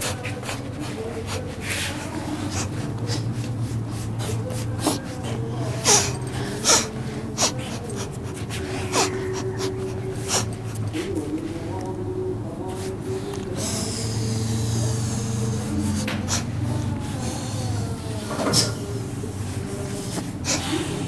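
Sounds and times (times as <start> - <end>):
person breathing forcefully: 0.0 - 11.0, 13.6 - 17.8
low moaning voice: 0.0 - 21.0.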